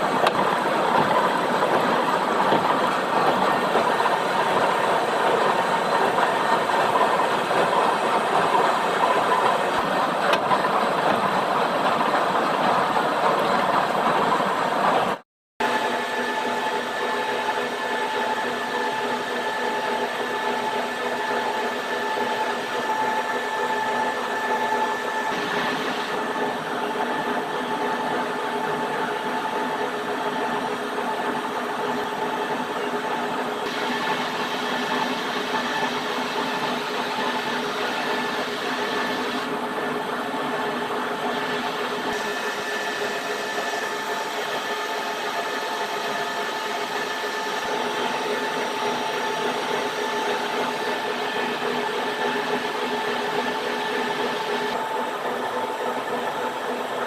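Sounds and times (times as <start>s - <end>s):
metalworking machinery running: 0.0s - 57.0s.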